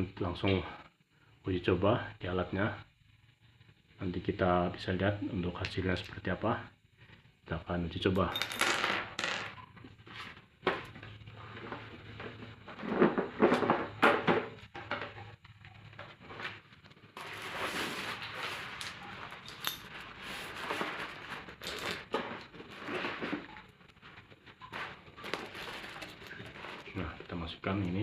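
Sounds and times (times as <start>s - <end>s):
metal clinks and knocks: 18.9s - 20.1s.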